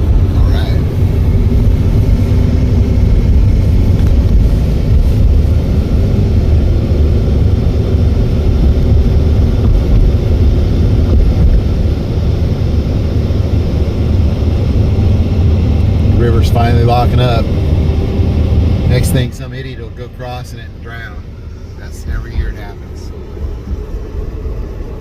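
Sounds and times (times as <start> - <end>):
car road and engine rumble: 0.0 - 25.0.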